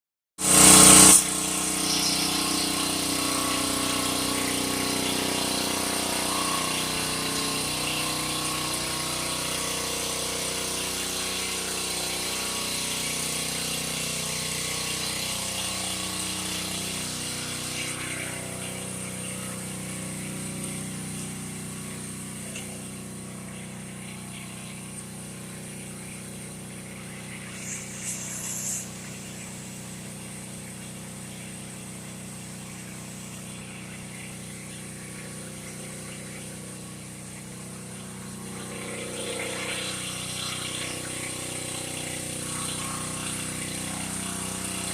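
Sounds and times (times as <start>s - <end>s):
brief higher hiss: 0.4s - 2.2s, 27.4s - 29.2s
motor hum: 0.4s - 44.9s.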